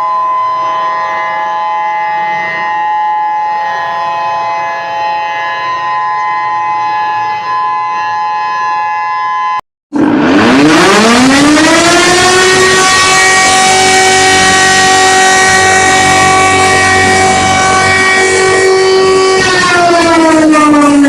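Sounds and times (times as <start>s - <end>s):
alarm of held tones: 0.0s - 9.6s
civil defense siren wailing: 0.0s - 21.0s.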